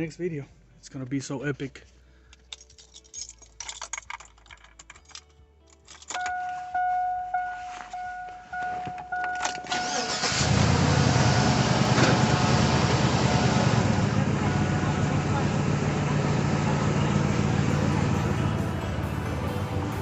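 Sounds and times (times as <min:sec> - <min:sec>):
keys jingling: 0:02.3 - 0:06.7
car dashboard chime beeping: 0:06.2 - 0:10.4
car engine starting and running: 0:06.2 - 0:20.0.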